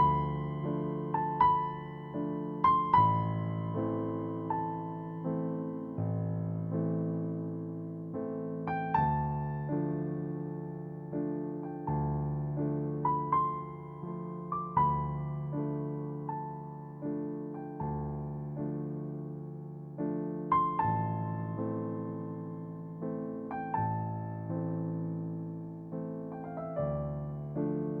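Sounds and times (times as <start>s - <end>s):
slow gentle piano music: 0.0s - 28.0s.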